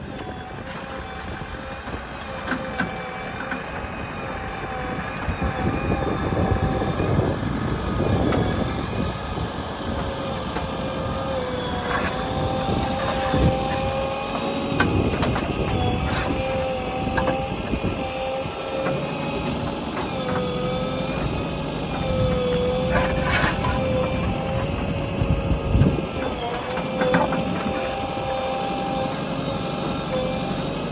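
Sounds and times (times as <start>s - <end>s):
diesel engine running under load: 0.0s - 30.9s
digging knocks and clanks: 0.1s - 4.0s, 9.8s - 30.4s.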